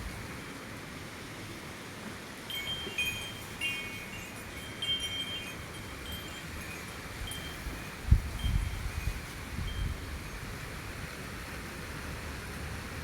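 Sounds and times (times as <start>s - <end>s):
wind in the trees: 0.0s - 13.0s
wind chimes ringing: 2.5s - 10.5s.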